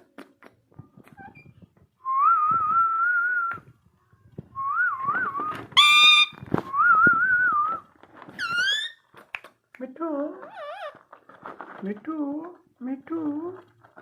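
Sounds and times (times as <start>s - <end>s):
shrill parrot call: 5.8s - 6.4s.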